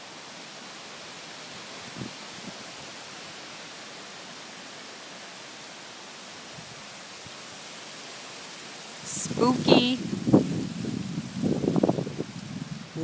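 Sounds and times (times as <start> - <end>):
wind blowing leaves: 0.0 - 13.0.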